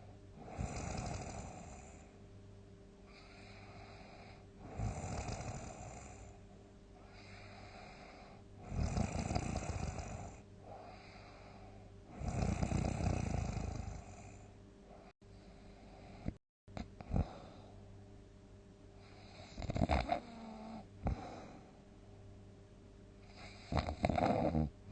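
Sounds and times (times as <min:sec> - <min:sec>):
quiet breaths: 0:00.0 - 0:02.2, 0:03.0 - 0:18.0, 0:18.9 - 0:22.3, 0:23.2 - 0:24.5
person snoring heavily: 0:00.4 - 0:02.1, 0:03.1 - 0:06.4, 0:07.1 - 0:14.4, 0:19.1 - 0:21.7, 0:23.3 - 0:24.7.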